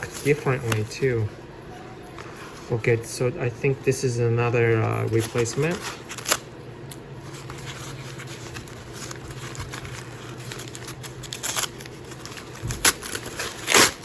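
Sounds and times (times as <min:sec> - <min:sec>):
packaging rustling: 0:00.0 - 0:01.3, 0:04.8 - 0:06.4, 0:07.2 - 0:14.0
low steady hum: 0:00.0 - 0:14.0.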